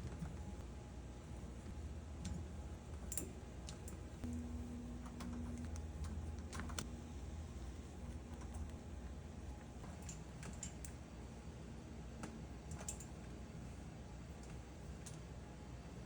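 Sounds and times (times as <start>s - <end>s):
low steady hum: 0.0s - 16.0s
faint clicks and light taps: 14.4s - 15.3s.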